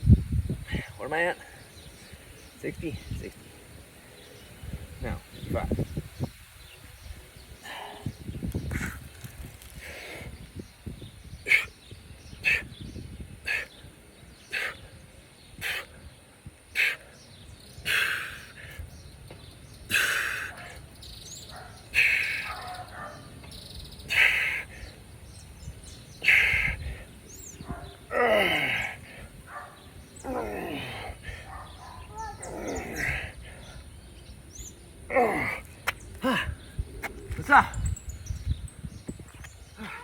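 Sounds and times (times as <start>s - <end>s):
man breathing hard: 9.7s - 10.7s, 11.4s - 17.2s, 17.8s - 19.0s, 19.9s - 20.9s, 21.8s - 22.7s, 24.0s - 25.0s, 26.1s - 29.4s, 30.8s - 31.6s.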